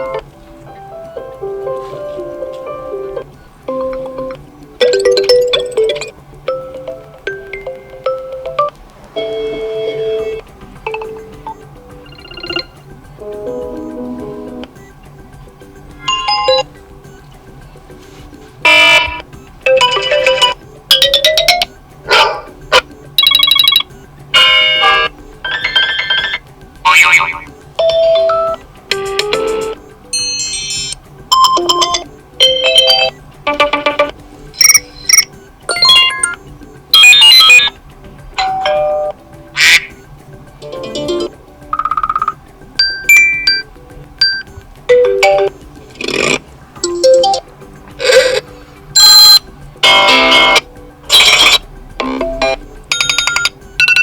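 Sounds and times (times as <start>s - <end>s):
phone ringtone snippets: 4.8s - 15.0s, 16.0s - 17.3s, 18.6s - 21.8s, 23.2s - 37.7s, 40.6s - 45.6s, 46.8s - 47.4s, 49.0s - 54.0s.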